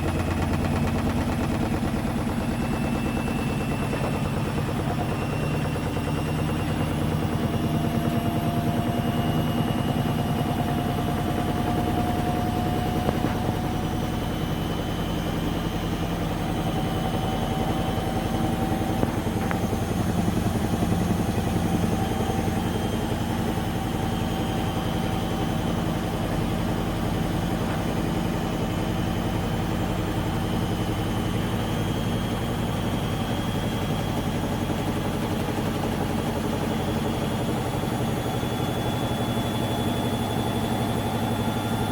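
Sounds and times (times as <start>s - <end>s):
washing machine spinning: 9.0s - 41.9s.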